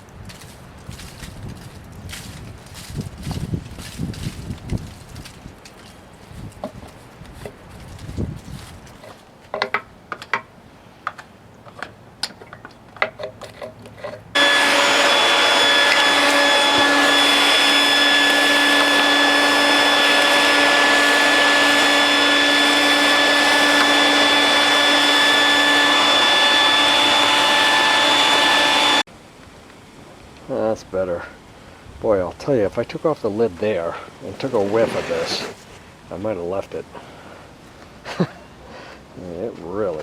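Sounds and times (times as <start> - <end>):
vacuum cleaner running: 14.4 - 29.1.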